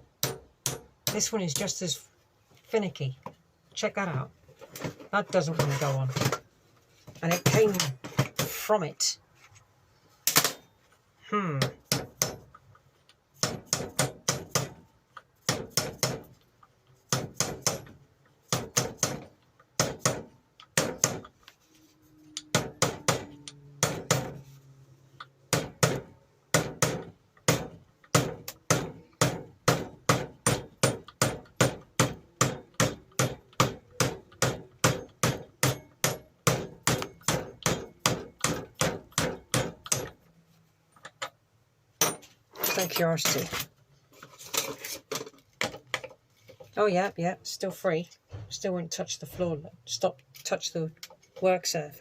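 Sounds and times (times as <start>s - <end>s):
hammer tapping on metal: 0.2s - 1.6s, 25.5s - 40.2s.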